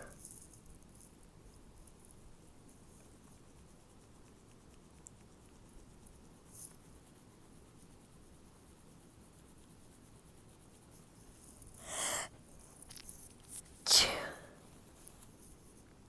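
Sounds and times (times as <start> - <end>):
stifled sneeze: 11.8 - 12.3, 13.9 - 14.5.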